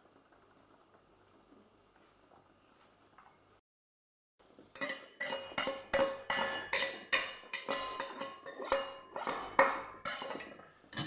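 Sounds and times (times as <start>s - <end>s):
metal spoon knocking in a pot: 4.8s - 11.0s.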